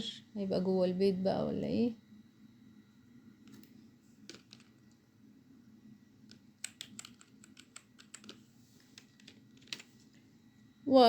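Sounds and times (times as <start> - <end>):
faint keyboard typing: 3.4 - 5.0, 6.2 - 10.2.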